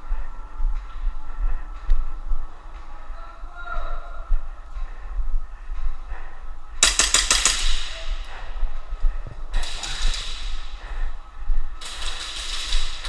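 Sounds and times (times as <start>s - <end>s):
airsoft gun shots: 6.8s - 8.6s.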